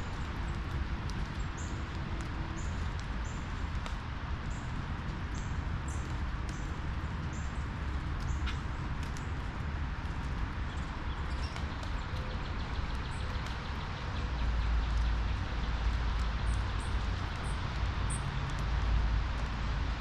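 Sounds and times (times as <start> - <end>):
birds chirping: 4.4 - 18.6.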